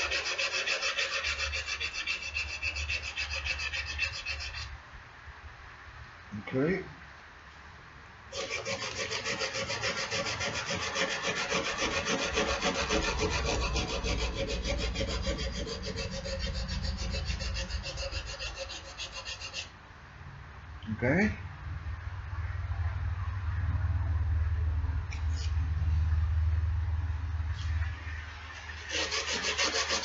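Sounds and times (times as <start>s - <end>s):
sandpaper scrubbing on metal: 0.0s - 4.7s, 8.3s - 19.7s, 28.6s - 30.0s.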